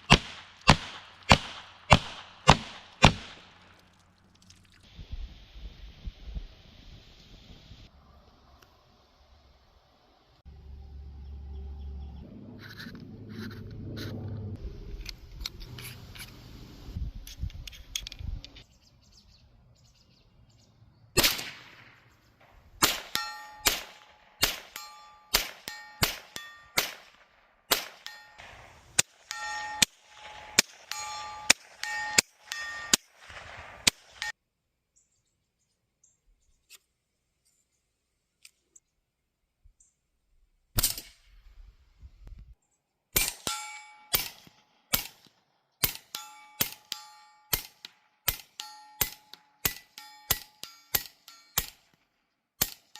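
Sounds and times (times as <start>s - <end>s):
air pistol shots: 0.0s - 3.7s, 21.2s - 22.0s, 22.8s - 34.3s, 44.1s - 51.8s.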